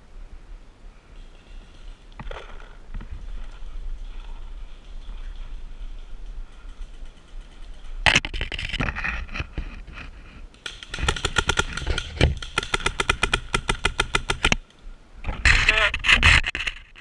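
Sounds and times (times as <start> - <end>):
paintball marker shots: 10.6 - 14.6.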